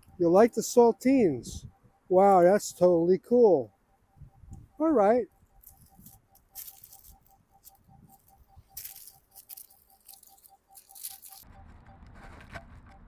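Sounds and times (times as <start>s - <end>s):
squirrel crunching cracker: 8.7s - 11.4s.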